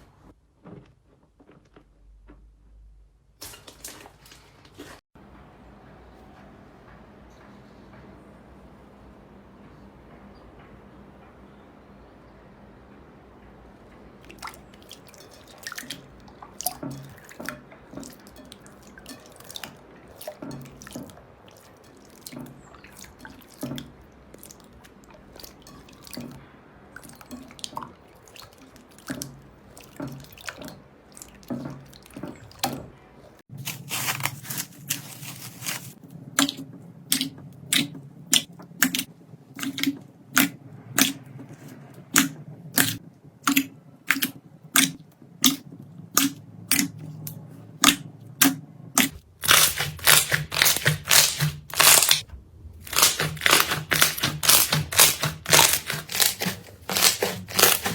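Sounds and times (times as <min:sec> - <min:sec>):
crisp pops: 0:49.4 - 0:52.2, 0:52.8 - 0:57.9.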